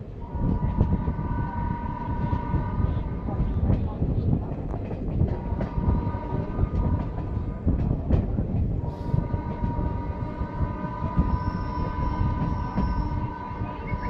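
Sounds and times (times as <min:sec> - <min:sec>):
locomotive engine chugging: 0:00.0 - 0:14.0
steady high tone: 0:00.2 - 0:04.1, 0:08.8 - 0:14.0.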